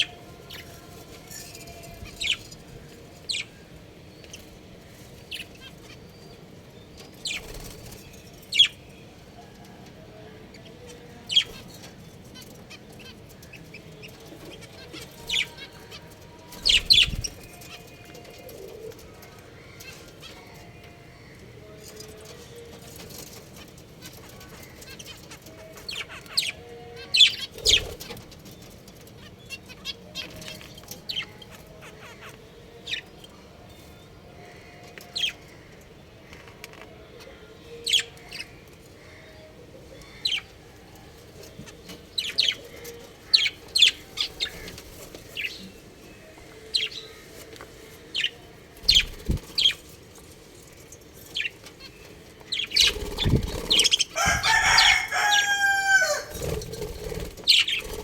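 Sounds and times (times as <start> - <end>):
budgerigars chirping: 48.9 - 49.8, 52.5 - 58.0.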